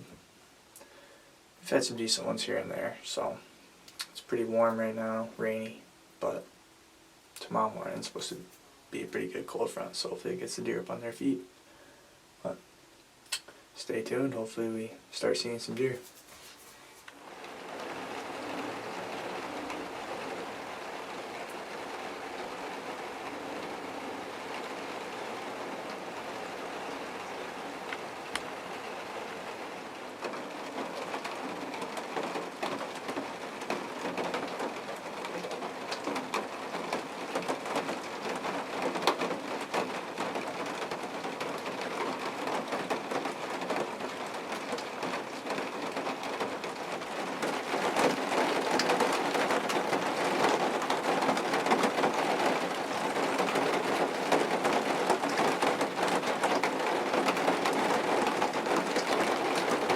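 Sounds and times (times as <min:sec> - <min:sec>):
steady rain falling: 0:00.0 - 0:59.9
raindrops ticking on a surface: 0:03.1 - 0:04.9, 0:15.7 - 0:59.9.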